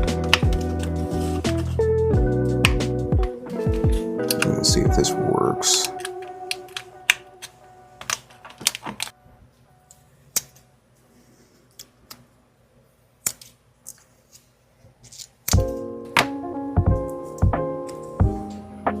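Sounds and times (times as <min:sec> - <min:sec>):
background music: 0:00.0 - 0:09.2, 0:15.5 - 0:19.0.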